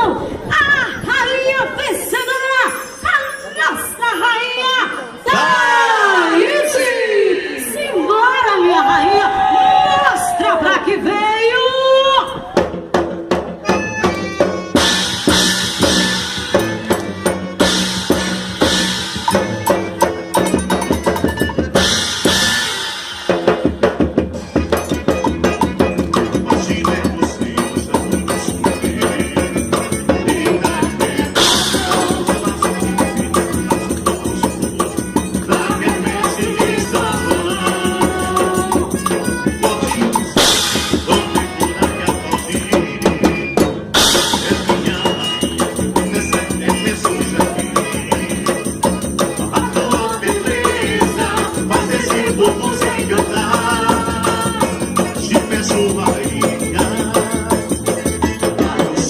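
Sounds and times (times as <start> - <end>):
rattling percussion beat: 12.3 - 59.0
dance music with singing: 26.5 - 33.5.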